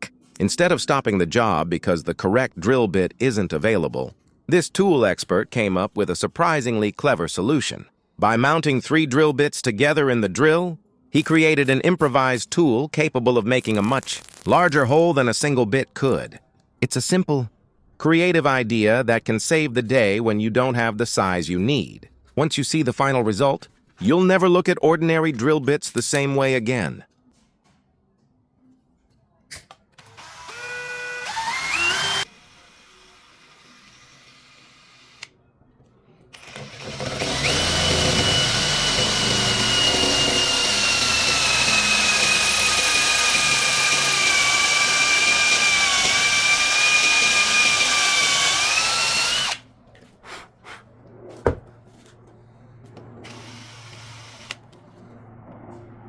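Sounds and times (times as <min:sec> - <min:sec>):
electric drill whining: 0:13.6 - 0:15.0, 0:30.0 - 0:35.3, 0:36.4 - 0:49.6, 0:53.2 - 0:54.6.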